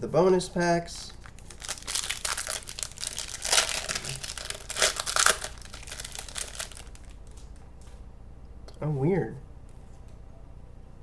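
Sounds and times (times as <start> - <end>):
foil wrapper crinkling and tearing: 1.1 - 7.5.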